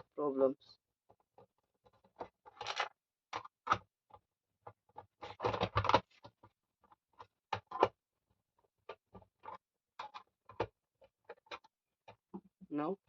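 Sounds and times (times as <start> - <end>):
plastic parts clicking and clattering: 1.1 - 8.0, 8.6 - 12.3.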